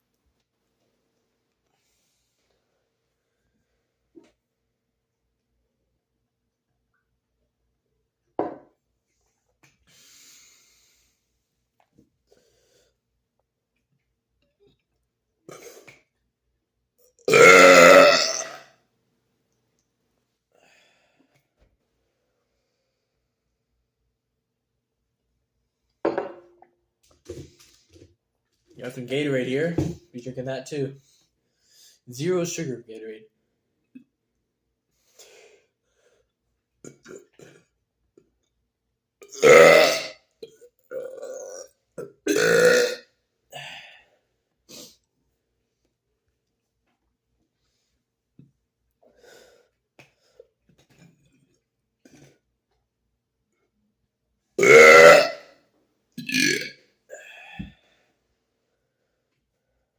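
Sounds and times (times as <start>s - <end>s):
man burping loudly: 17.3s - 18.7s, 39.2s - 43.1s, 54.6s - 55.5s, 56.2s - 57.7s.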